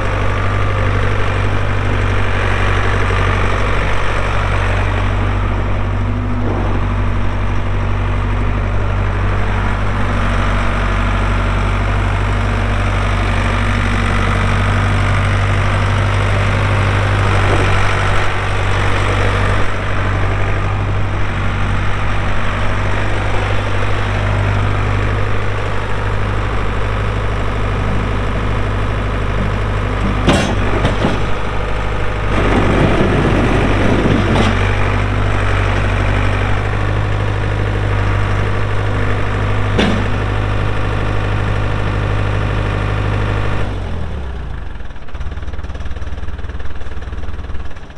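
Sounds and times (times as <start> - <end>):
diesel engine running: 0.0 - 47.9
rough rattling: 22.7 - 37.8.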